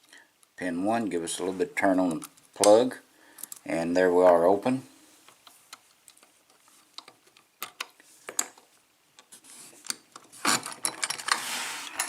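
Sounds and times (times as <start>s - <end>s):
metal clicks and scraping of lock: 5.7s - 8.6s, 9.8s - 11.4s
loud rubbing and scraping: 11.4s - 12.0s.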